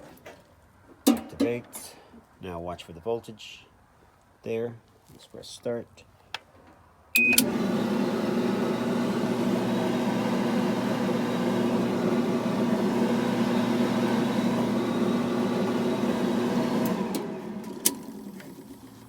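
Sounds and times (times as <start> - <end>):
clothes dryer running: 7.2 - 19.0.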